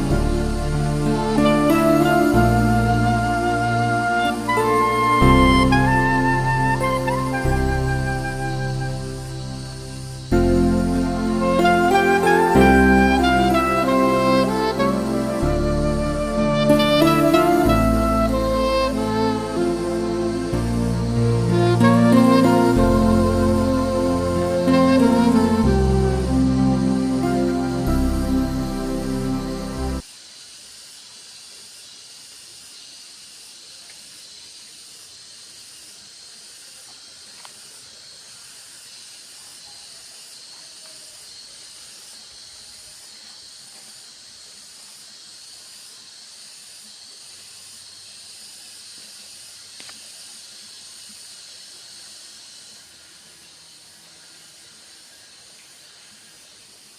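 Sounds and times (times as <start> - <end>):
background music: 0.0 - 30.0
high-pitched outdoor hiss: 0.0 - 56.9.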